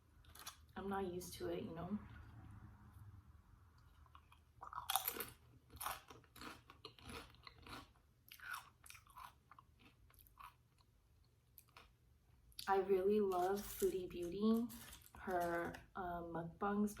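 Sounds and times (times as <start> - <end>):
chewing crunchy chips: 0.2 - 0.8, 3.8 - 12.7, 13.3 - 15.9.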